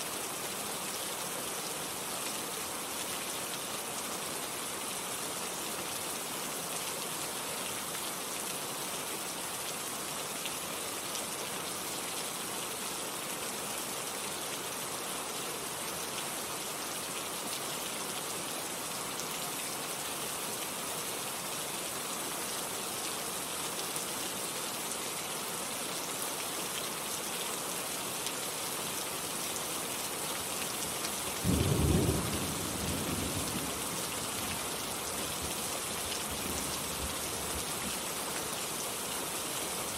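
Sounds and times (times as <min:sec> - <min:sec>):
steady rain falling: 0:00.0 - 0:39.9
low roll of thunder: 0:31.5 - 0:33.8.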